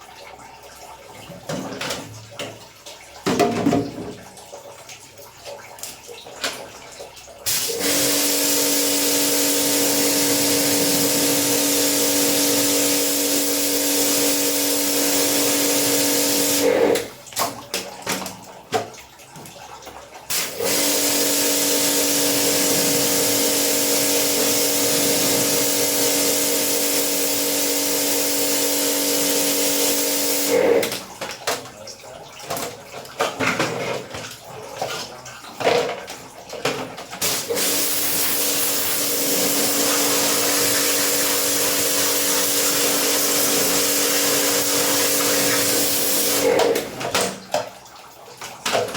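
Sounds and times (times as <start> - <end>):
pressure washer spraying water: 7.5 - 17.0, 20.3 - 30.8, 37.2 - 46.6
pump motor humming: 7.5 - 17.3, 20.3 - 31.5, 37.2 - 47.9.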